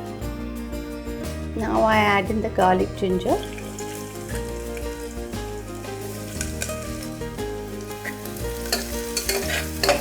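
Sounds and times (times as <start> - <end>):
paste sizzling in hot oil: 3.2 - 10.0
spoon scraping a pot: 7.8 - 10.0.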